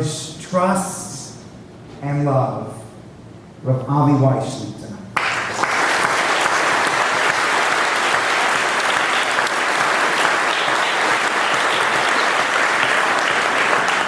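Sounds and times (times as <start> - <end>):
audience applauding: 5.2 - 14.0.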